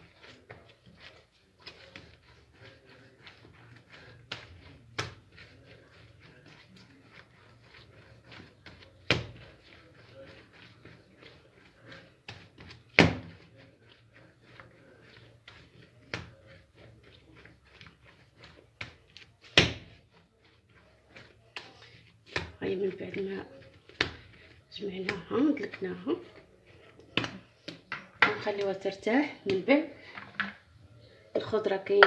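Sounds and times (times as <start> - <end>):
dough slapped down: 9.0 - 9.5, 12.3 - 13.4, 18.8 - 20.0, 27.1 - 28.4.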